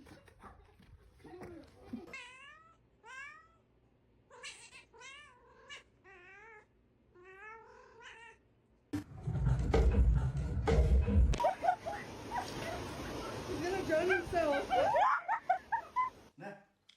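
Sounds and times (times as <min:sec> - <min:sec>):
cat yowling: 0:02.1 - 0:03.6, 0:04.3 - 0:08.4.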